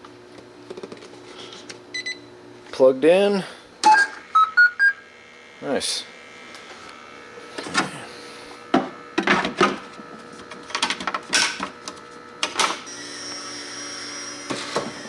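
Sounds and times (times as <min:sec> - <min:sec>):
small electric motor whirring: 0:12.9 - 0:15.0.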